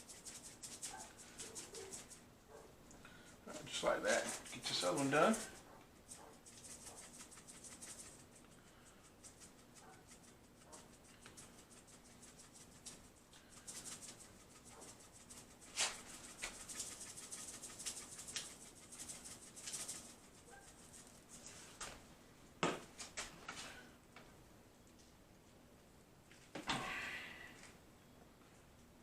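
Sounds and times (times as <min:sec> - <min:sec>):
spice shaker rattling: 0:00.0 - 0:02.3, 0:03.7 - 0:21.5.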